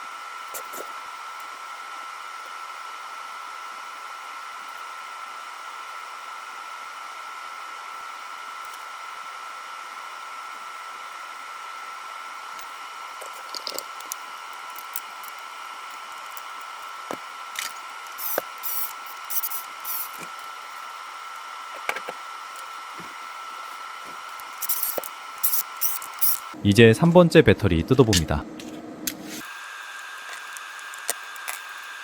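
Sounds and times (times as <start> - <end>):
fan hiss: 14.0 - 32.0
hands handling battery pack: 28.6 - 32.0.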